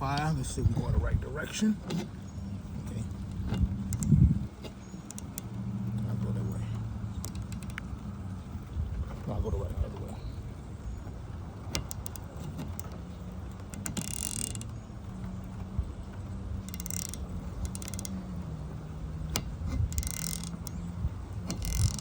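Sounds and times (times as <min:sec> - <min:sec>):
steady low hum: 0:00.0 - 0:22.0
ratchet wrench clicking: 0:03.2 - 0:06.0, 0:07.1 - 0:08.0, 0:11.7 - 0:14.8, 0:15.5 - 0:18.5, 0:19.2 - 0:22.0.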